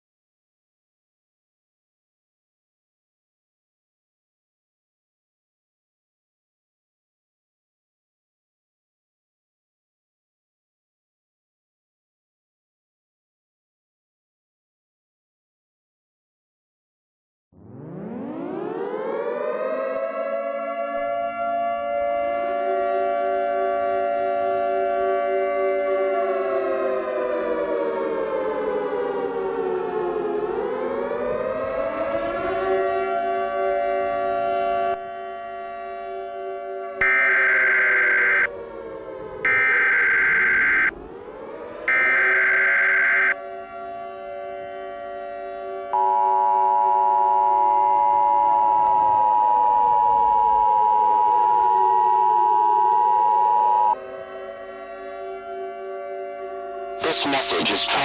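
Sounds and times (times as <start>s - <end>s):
siren sounding multi-tone chord: 17.6s - 20.7s, 37.0s - 58.0s
siren sliding in pitch: 17.7s - 20.0s, 37.0s - 38.5s, 39.5s - 43.4s
steady electronic alert tone: 37.0s - 38.5s, 39.5s - 40.9s, 41.9s - 43.4s.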